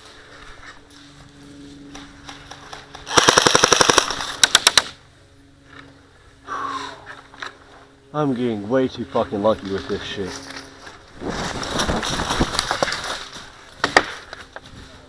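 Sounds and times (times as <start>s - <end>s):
airsoft gun firing: 3.0s - 5.0s.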